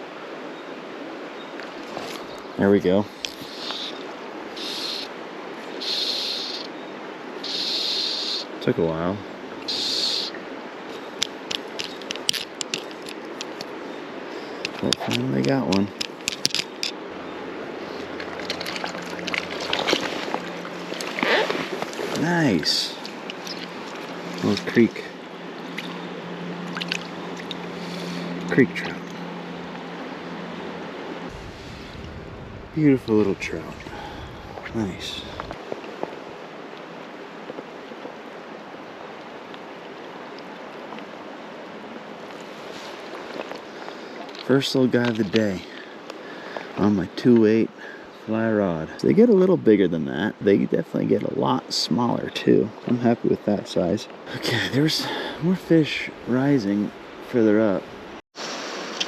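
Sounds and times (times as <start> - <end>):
creek water running: 0.0 - 59.0
small water splashes: 17.9 - 22.3, 22.9 - 28.4.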